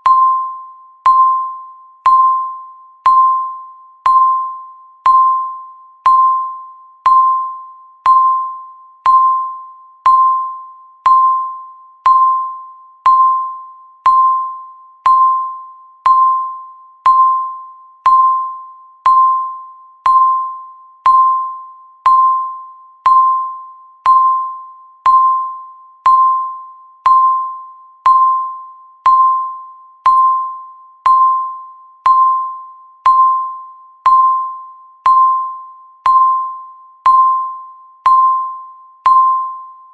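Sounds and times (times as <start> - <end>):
electronic timer ping: 0.0 - 39.9.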